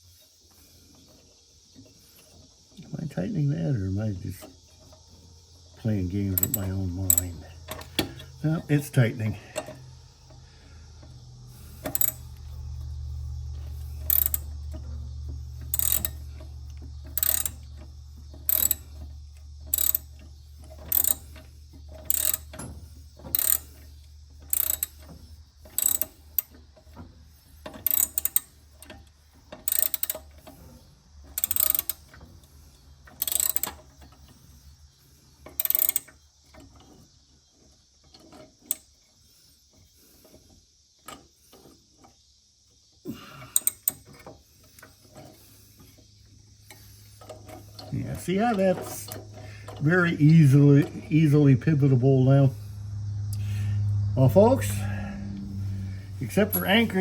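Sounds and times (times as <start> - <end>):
steady low hum: 0.6 - 29.3, 44.6 - 57.0
ratchet pawl clicking: 4.4 - 34.7, 35.4 - 36.7, 43.6 - 57.0.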